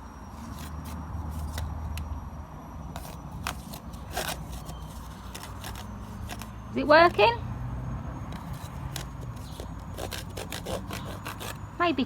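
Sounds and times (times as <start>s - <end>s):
steady low hum: 0.0s - 12.0s
toy saw scraping on wood: 0.3s - 1.7s, 3.0s - 7.4s, 8.3s - 11.8s.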